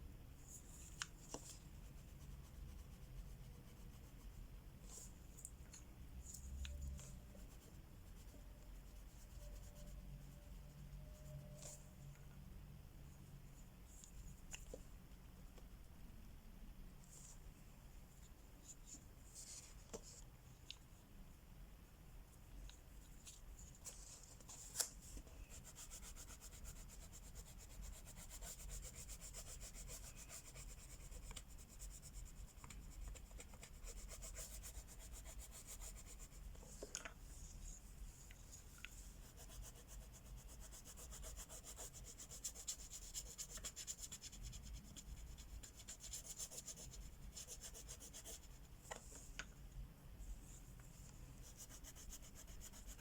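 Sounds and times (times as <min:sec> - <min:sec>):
crayon scratching on paper: 0:39.2 - 0:48.5, 0:51.4 - 0:53.0.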